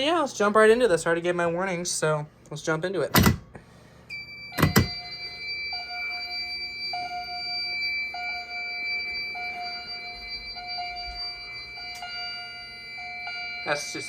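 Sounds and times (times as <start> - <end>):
steady high-pitched tone: 4.1 - 14.0.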